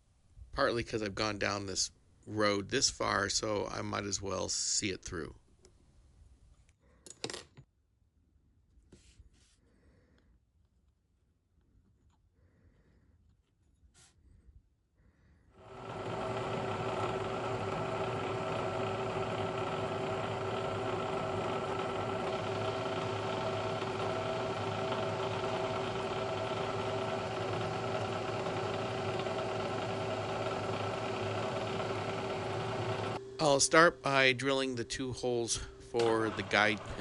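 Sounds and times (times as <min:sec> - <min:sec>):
electric motor humming and whining: 0:15.6 - 0:33.4, 0:35.9 - 0:37.0.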